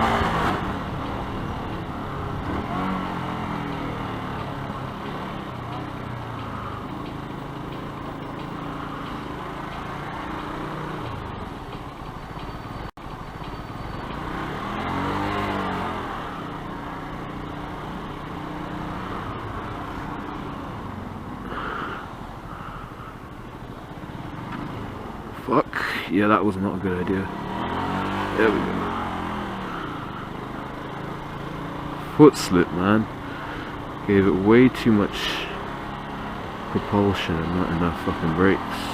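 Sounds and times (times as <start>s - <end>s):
motorcycle engine running: 0.0s - 25.9s, 26.8s - 38.9s.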